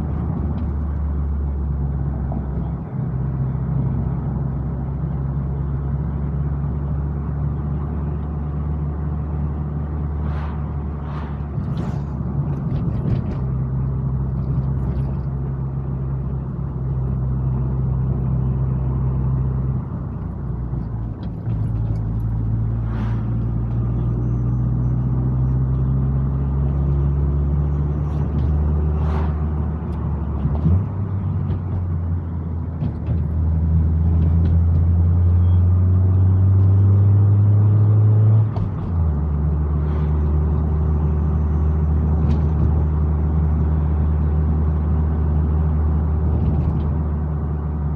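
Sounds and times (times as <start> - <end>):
car engine changing gears: 0.0 - 47.9
road noise: 0.0 - 47.9.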